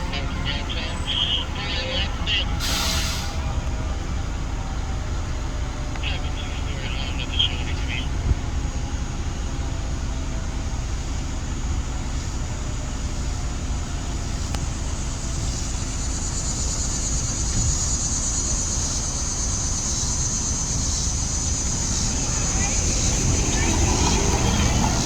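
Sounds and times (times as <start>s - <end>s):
low vehicle rumble: 0.0s - 25.0s.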